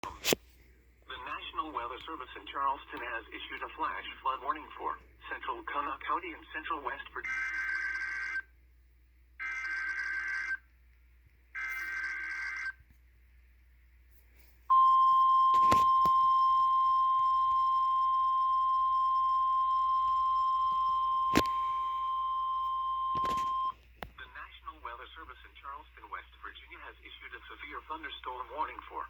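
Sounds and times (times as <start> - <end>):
steady warning alarm tone: 14.7 - 23.7.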